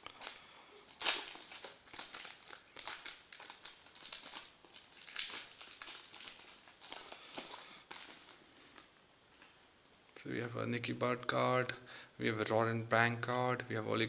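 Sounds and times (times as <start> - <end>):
card pack wrapper crinkling: 0.1 - 8.9.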